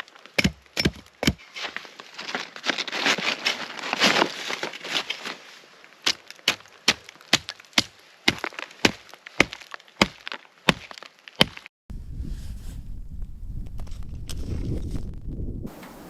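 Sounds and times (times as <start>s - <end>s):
wood crackling and snapping: 0.0s - 11.7s
axe strikes on wood: 0.4s - 1.4s.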